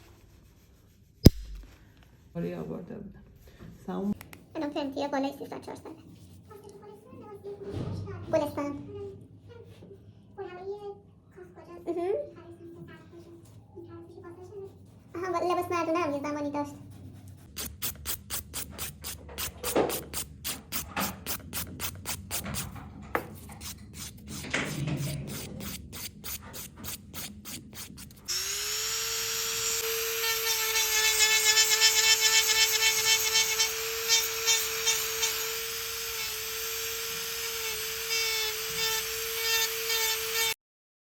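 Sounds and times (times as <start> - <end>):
nail file rasping: 1.2 - 1.7, 17.4 - 22.7, 23.4 - 40.6
electric nail drill whining: 28.3 - 40.6.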